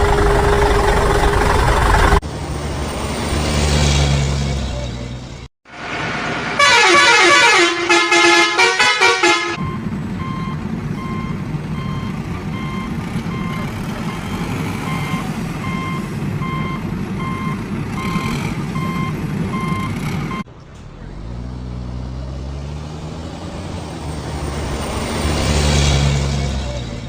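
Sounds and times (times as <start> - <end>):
engine hum: 0.0 - 27.0
truck horn tune: 6.6 - 9.8
reversing beeps: 9.6 - 20.4.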